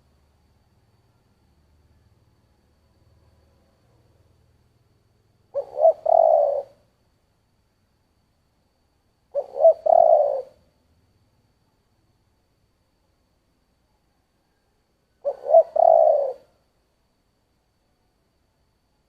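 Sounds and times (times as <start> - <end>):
dove cooing: 5.5 - 6.8, 9.3 - 10.7, 15.2 - 16.6.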